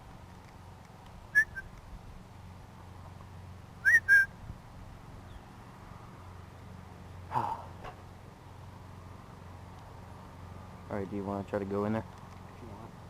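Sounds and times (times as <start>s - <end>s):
high whistle-like chirps: 1.4s - 1.7s, 3.8s - 4.3s.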